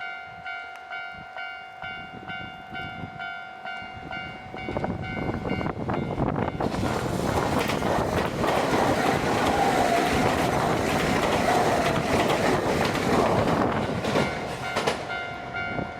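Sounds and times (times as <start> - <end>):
wavering train whine: 0.0 - 15.9
train wheels rumbling: 4.0 - 15.9
clicks over rail joints: 6.7 - 15.1.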